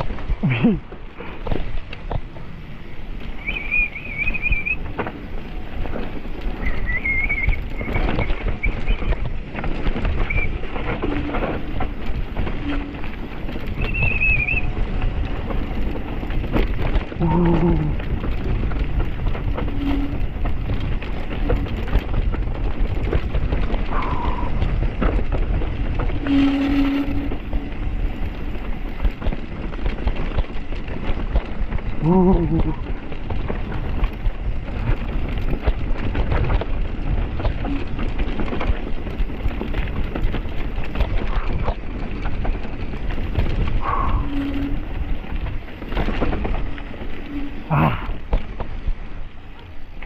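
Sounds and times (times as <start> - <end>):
bike rattling and knocking: 0.0 - 50.0
wind on microphone: 0.0 - 50.0
brief low calls: 17.2 - 18.0, 32.0 - 32.9, 47.3 - 48.2.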